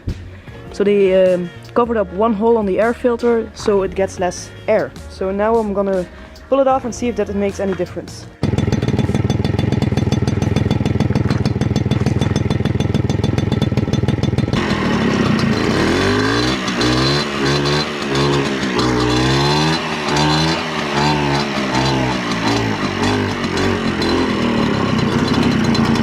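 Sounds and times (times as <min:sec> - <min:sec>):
moped engine revving: 0:00.8 - 0:26.0
moped engine idling: 0:07.0 - 0:26.0.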